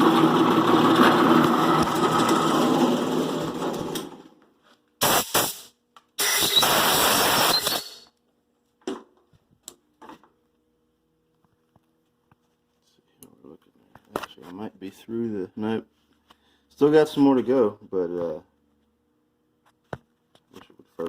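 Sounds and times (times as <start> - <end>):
die grinder grinding metal: 0.0 - 4.2, 6.2 - 8.0.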